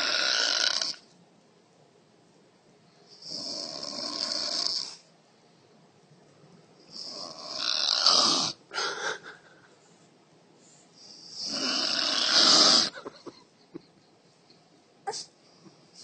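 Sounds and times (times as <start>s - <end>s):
snort: 0.0s - 1.0s, 3.1s - 5.0s, 6.9s - 9.0s, 11.0s - 13.0s
woman snoring loudly: 0.0s - 1.0s, 3.2s - 5.0s, 7.0s - 8.6s, 11.3s - 13.0s.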